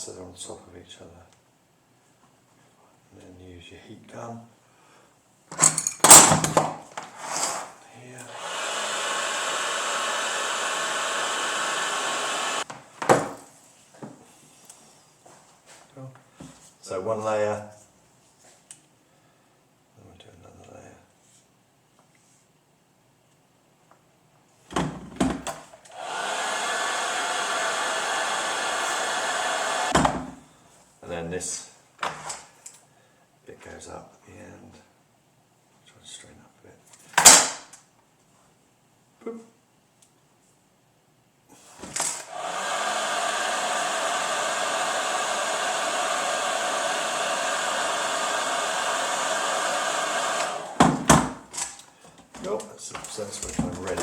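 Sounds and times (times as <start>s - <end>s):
heat gun blowing: 8.2s - 12.7s, 25.9s - 30.0s, 41.6s - 51.2s.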